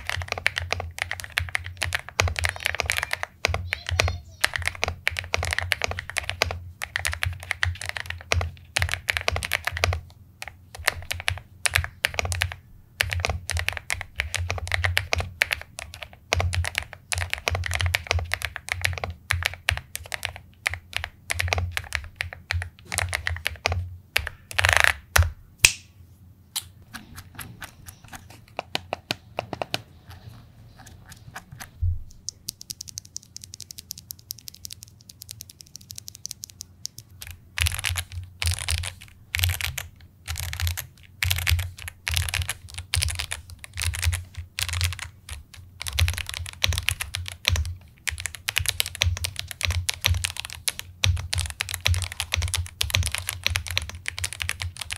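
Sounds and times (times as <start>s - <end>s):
mechanical keyboard typing: 0.0s - 25.3s, 26.9s - 54.9s.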